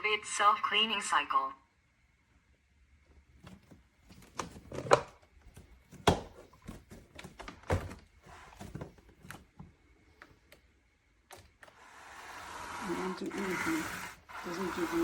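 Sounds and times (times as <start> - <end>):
hard plastic knocks and clunks: 3.4 - 9.7.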